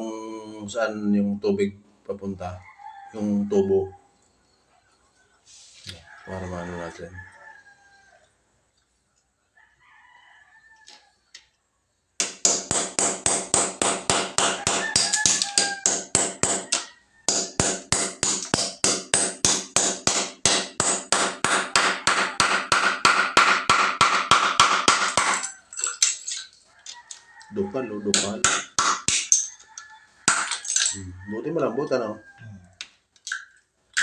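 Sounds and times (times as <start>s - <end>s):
hammer chipping floor tiles: 12.2s - 26.6s, 28.1s - 29.5s, 30.3s - 31.0s.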